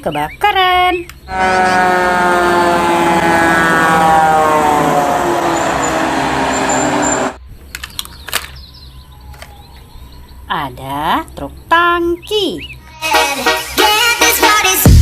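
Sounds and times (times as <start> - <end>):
fire truck horn tone: 1.3 - 7.4
rushing noise: 1.3 - 7.4.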